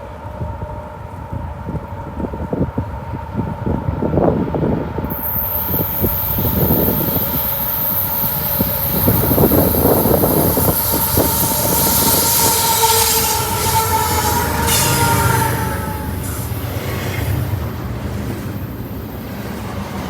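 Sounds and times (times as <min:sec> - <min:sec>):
freight train rumbling: 0:00.0 - 0:20.0
wind buffeting microphone: 0:00.0 - 0:20.0
train wheel squeal: 0:05.1 - 0:20.0.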